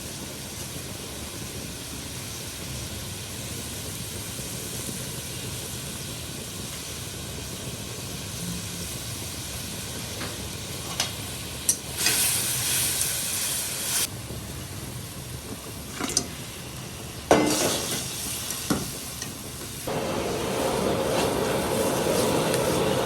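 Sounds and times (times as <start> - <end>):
hotpot hissing on stove: 0.0 - 23.0
utensils clicking against pan: 15.9 - 16.4.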